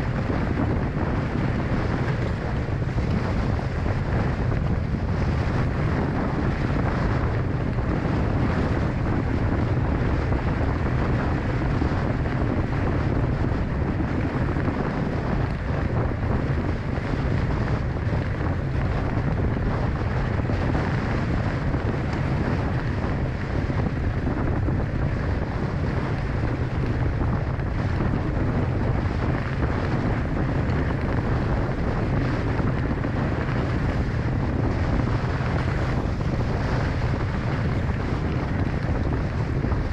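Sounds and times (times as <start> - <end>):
wind buffeting microphone: 0.0 - 39.9.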